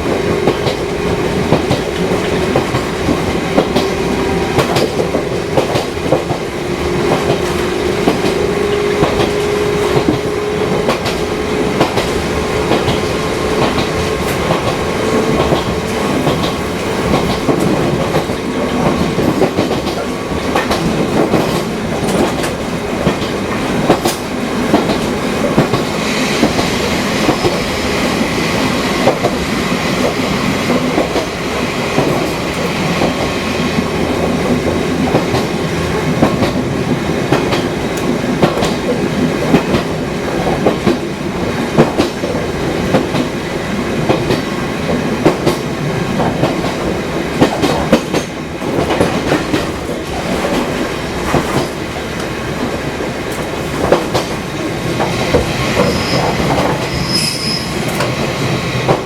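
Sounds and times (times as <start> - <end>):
train wheels rumbling: 0.0 - 59.0
wheels clicking over rail joints: 0.2 - 27.6, 44.0 - 57.0.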